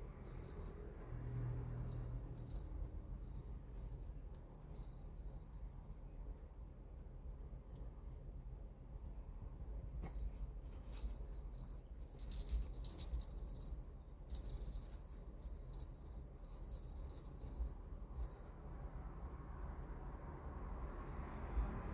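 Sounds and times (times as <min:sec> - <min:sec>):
cat toy rattling and jingling: 0:00.1 - 0:01.0, 0:01.7 - 0:05.6, 0:10.0 - 0:19.8.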